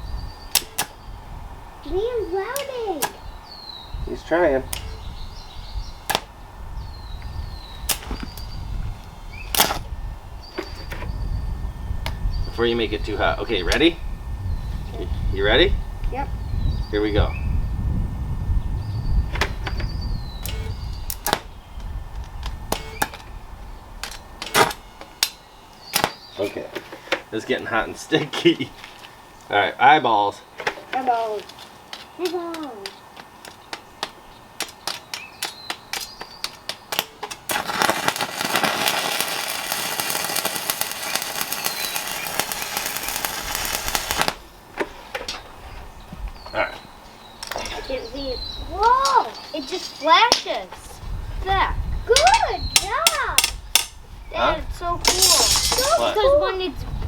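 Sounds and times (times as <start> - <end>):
welding arc crackling and popping: 7.7 - 9.9, 20.4 - 23.3, 33.7 - 44.5.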